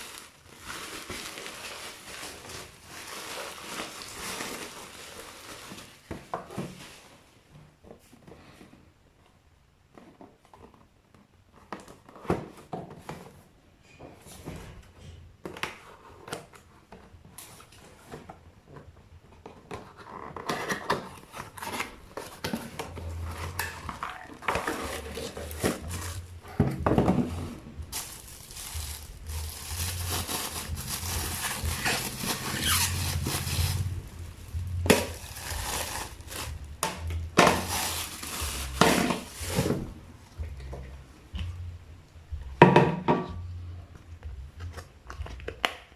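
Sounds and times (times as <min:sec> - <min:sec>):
packaging rustling and scraping: 0:00.0 - 0:07.4, 0:15.5 - 0:40.8.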